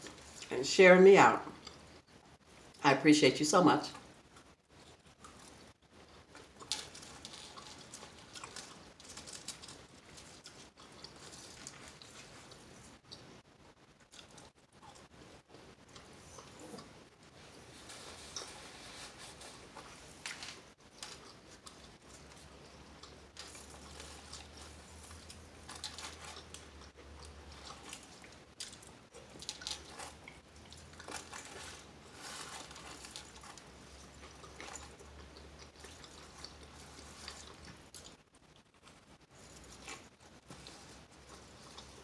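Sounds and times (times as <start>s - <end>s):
chewing and biting food: 4.0s - 13.4s, 14.0s - 20.3s, 20.9s - 42.0s
food crunches: 6.3s - 12.4s, 25.2s - 33.7s.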